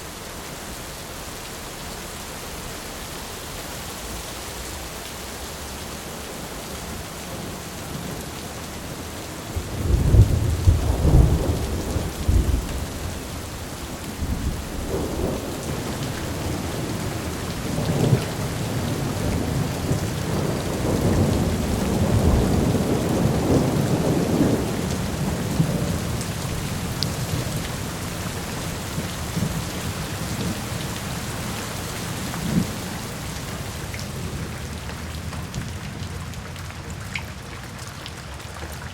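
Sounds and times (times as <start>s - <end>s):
steady rain falling: 0.0s - 38.9s
thunder rumbling: 9.5s - 30.9s.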